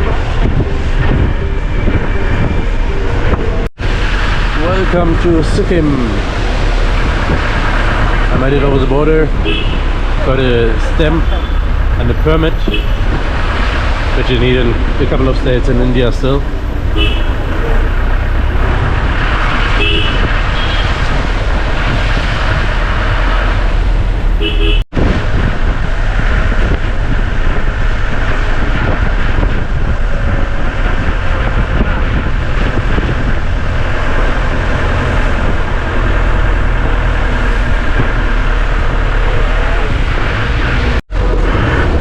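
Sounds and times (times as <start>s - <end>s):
car engine and road rumble: 0.0s - 42.0s
car horn toots: 9.4s - 9.9s, 12.5s - 13.2s, 16.9s - 18.1s, 19.7s - 21.0s, 24.4s - 24.8s.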